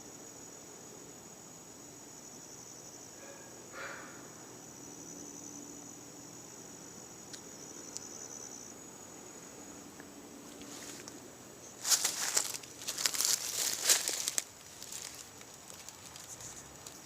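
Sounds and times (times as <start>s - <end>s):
insects trilling: 0.0s - 17.0s
loud crackling rustle: 11.8s - 17.0s.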